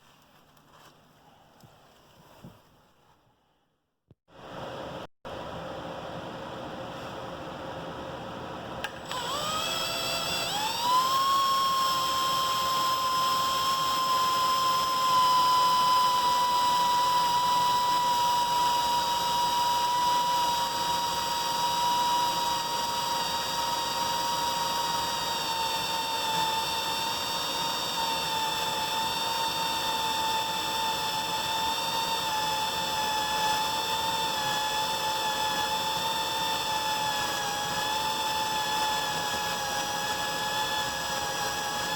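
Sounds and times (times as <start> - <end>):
electric drill whining: 8.8 - 41.9.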